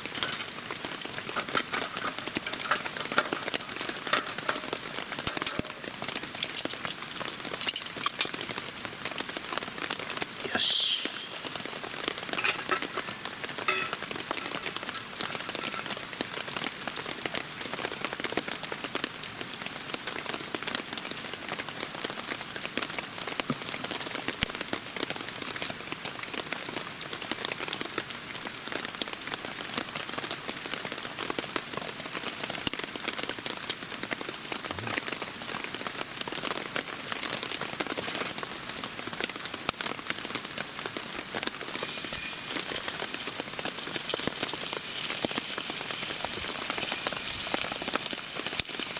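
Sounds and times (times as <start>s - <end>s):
steady rain pattering: 0.0s - 48.9s.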